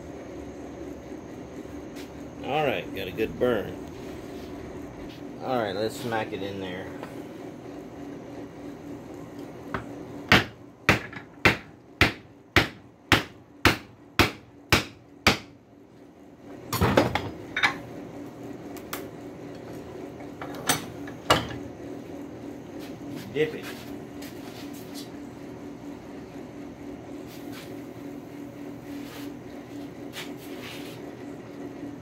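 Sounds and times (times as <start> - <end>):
hammer striking wooden handle: 10.3 - 15.5.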